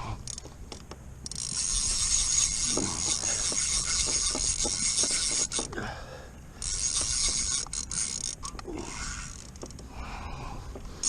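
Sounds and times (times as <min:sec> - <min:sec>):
fishing reel clicker buzzing: 0:01.2 - 0:05.7, 0:06.6 - 0:09.7.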